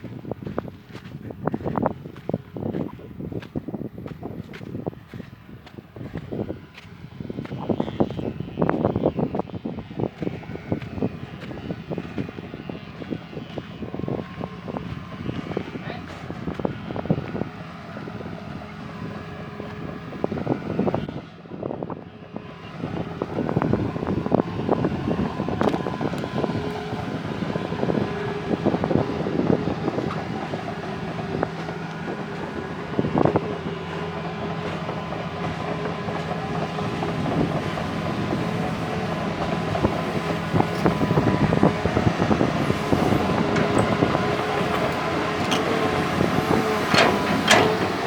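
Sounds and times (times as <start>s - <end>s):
diesel engine running: 0.0s - 48.0s
steel tracks clanking: 29.5s - 48.0s.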